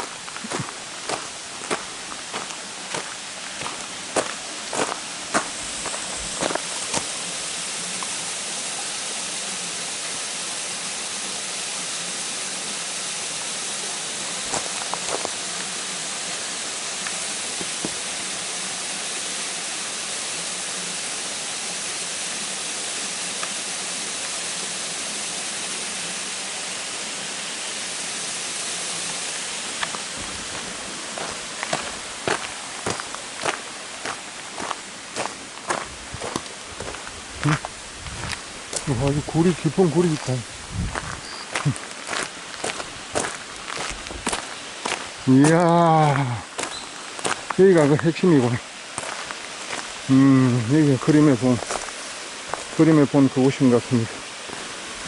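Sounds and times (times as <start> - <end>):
footsteps: 0.0 - 7.2, 14.5 - 15.8, 29.1 - 48.0, 49.0 - 49.9, 51.5 - 52.8
small waterfall rushing: 0.0 - 55.0.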